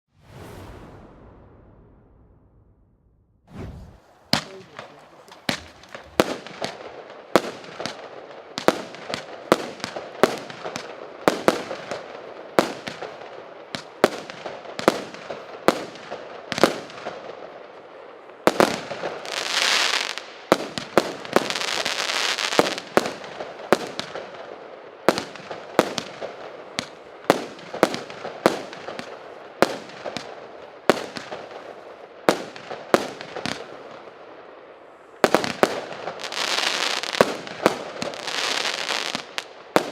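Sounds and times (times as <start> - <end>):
firework launch reports: 0.1 - 2.9, 3.5 - 7.8
whistling firework hiss: 3.5 - 6.2, 38.1 - 39.5.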